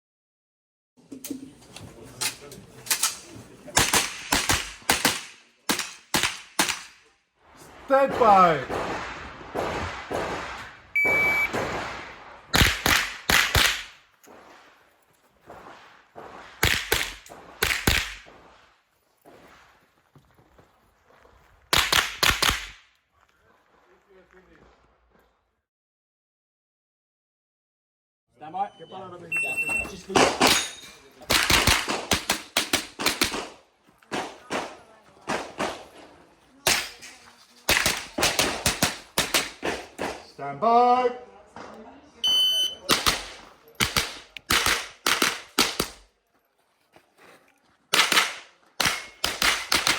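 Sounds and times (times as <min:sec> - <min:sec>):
rifle shots: 0:03.8 - 0:07.0, 0:07.9 - 0:14.7, 0:15.4 - 0:18.7, 0:21.7 - 0:22.8, 0:31.3 - 0:36.0, 0:37.7 - 0:40.3, 0:42.8 - 0:46.0, 0:47.9 - 0:49.9.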